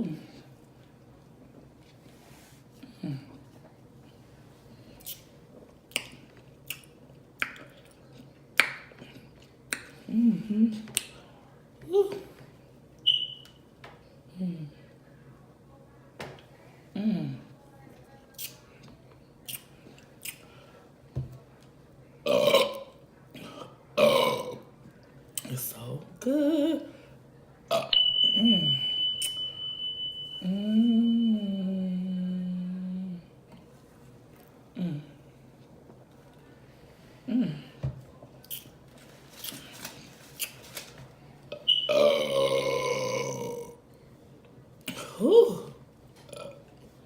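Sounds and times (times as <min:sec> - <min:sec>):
woman burping loudly: 0:22.2 - 0:23.0, 0:24.0 - 0:24.7, 0:41.9 - 0:43.8, 0:44.9 - 0:46.6.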